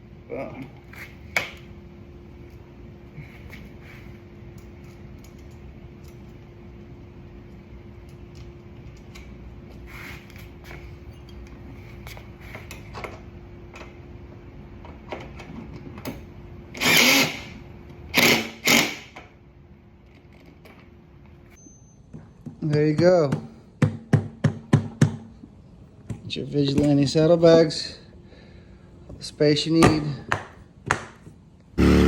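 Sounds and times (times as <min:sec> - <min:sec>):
steady low hum: 0:00.0 - 0:18.7.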